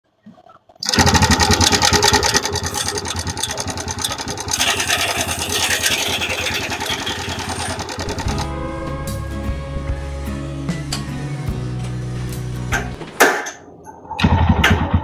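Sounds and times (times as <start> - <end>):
motorcycle engine idling: 0.9 - 8.5.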